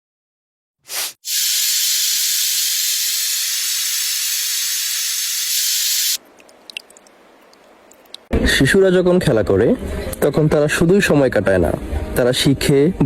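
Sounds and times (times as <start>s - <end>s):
loud steady hiss: 0.9s - 6.2s.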